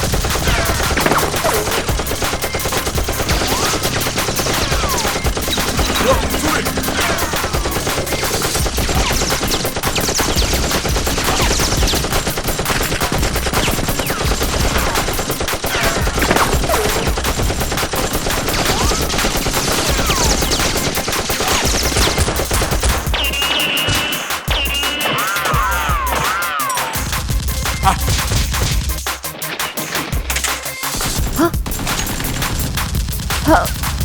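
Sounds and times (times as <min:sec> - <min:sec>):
rapid automatic gunfire: 0:00.0 - 0:25.1, 0:27.1 - 0:34.0
background music: 0:00.0 - 0:34.0
high steady tone: 0:01.2 - 0:08.9.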